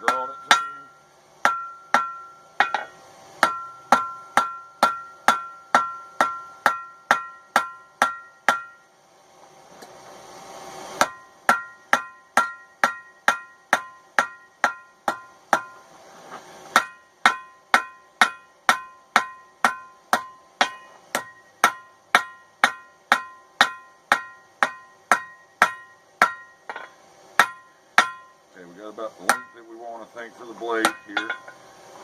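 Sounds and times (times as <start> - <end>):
anvil ringing: 0.0 - 8.9, 16.8 - 28.4, 29.3 - 29.7, 30.7 - 31.6
hammer striking metal on anvil: 0.0 - 8.9, 11.0 - 15.8, 16.7 - 28.4, 29.2 - 31.6.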